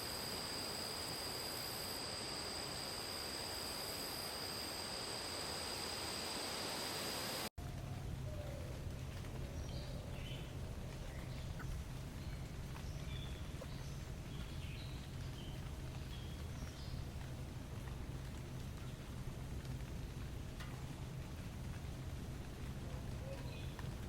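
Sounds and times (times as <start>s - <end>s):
steady low rumble: 7.6s - 24.0s.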